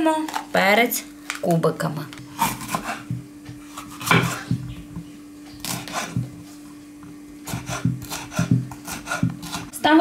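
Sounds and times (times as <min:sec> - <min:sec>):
knife slicing pepper: 0:02.3 - 0:04.6, 0:05.6 - 0:06.4, 0:07.4 - 0:09.7.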